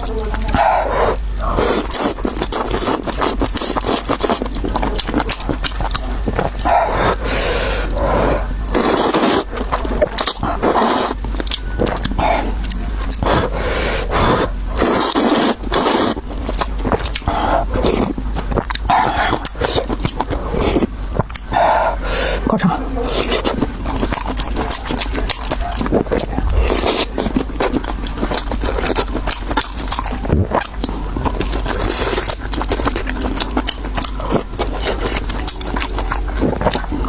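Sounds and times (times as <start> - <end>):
chewing noodles: 0.0 - 37.0
slurping: 0.0 - 37.0.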